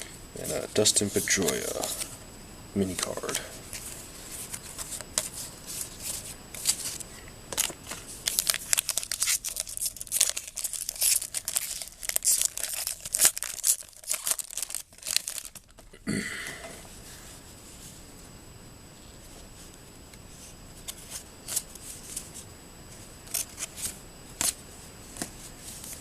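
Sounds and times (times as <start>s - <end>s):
foil wrapper tearing and crinkling: 4.4s - 15.9s.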